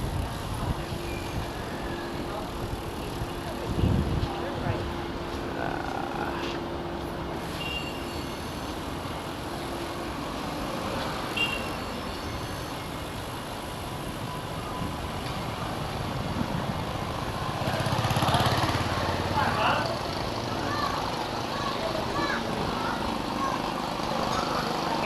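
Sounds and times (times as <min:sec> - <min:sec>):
heavy vehicle engine rumble: 0:00.0 - 0:25.0
road traffic: 0:00.0 - 0:25.0
short high beeps: 0:07.5 - 0:08.7.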